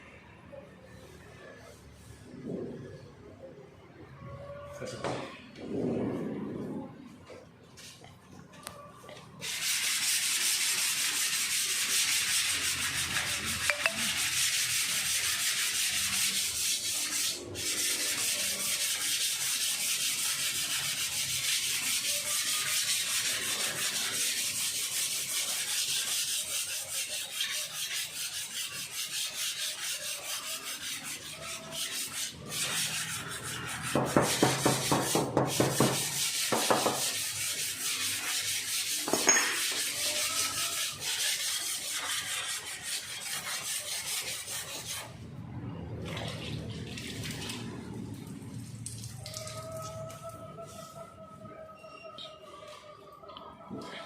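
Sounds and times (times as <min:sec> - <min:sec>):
sanding body filler: 0:09.4 - 0:45.2.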